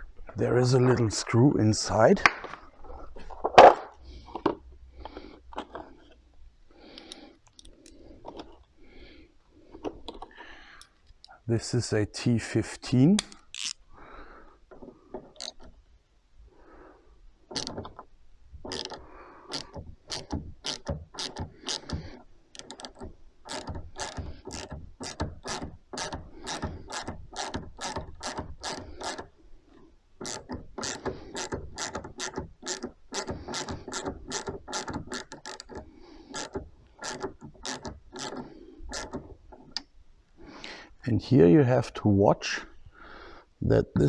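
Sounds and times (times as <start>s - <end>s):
ratchet clicks: 13.2s - 13.8s, 18.7s - 29.3s, 30.2s - 39.9s.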